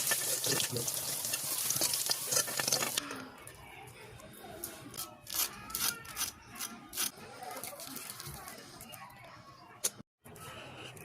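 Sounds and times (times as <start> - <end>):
chicken sizzling in hot oil: 0.0 - 3.0.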